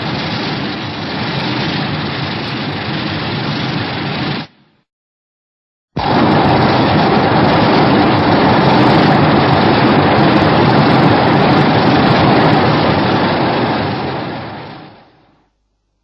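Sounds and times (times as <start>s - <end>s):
loud rushing rumble: 6.0s - 15.3s.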